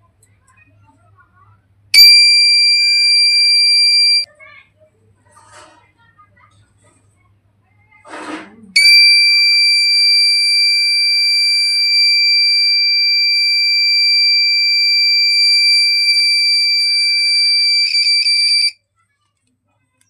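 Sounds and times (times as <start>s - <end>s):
piercing high-pitched alarm tone: 2.0s - 4.3s, 8.8s - 18.8s.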